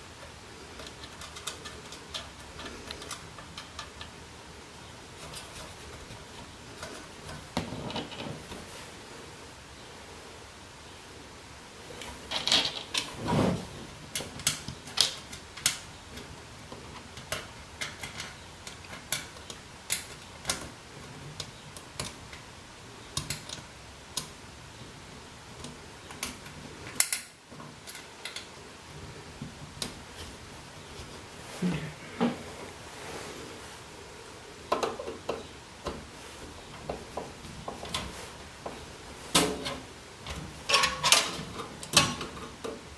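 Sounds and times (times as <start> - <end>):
handling noise: 11.9 - 42.9.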